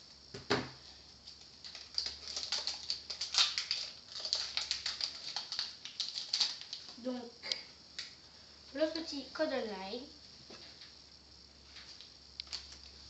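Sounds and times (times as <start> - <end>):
foil wrapper crinkling: 1.2 - 7.0, 11.8 - 12.9.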